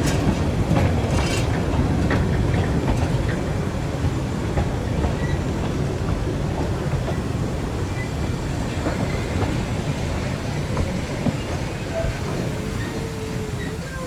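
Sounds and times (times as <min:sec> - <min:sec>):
wheels clicking over rail joints: 0:00.0 - 0:07.3
train rumbling along track: 0:00.0 - 0:14.0.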